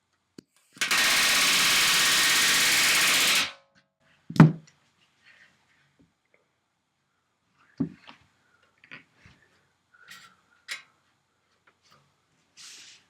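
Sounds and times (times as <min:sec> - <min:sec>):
pneumatic rivet gun hammering: 0:00.8 - 0:03.6.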